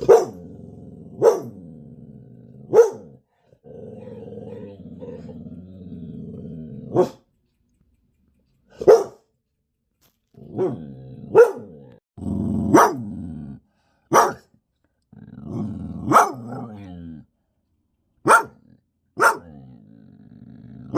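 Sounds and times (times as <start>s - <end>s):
dog barking sharply: 0.0s - 0.4s, 8.8s - 9.2s, 14.1s - 14.4s, 18.2s - 18.6s, 19.2s - 19.5s
dog growling: 0.0s - 7.2s, 10.4s - 13.8s, 15.1s - 17.3s, 18.6s - 20.9s.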